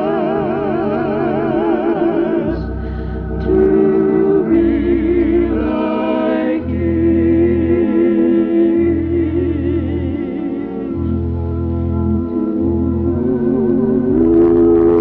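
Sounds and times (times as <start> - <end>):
gospel organ music: 0.0 - 15.0
wavering vibrato tone: 12.4 - 15.0.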